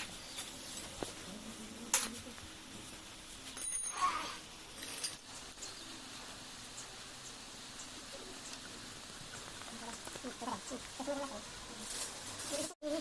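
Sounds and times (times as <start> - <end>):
metal tools clinking and tapping: 3.5 - 4.2
ringing metallic clink: 3.6 - 4.2.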